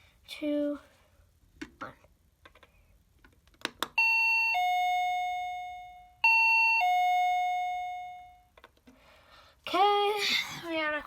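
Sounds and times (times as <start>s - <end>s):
doorbell chime ding-dong: 4.0s - 8.5s.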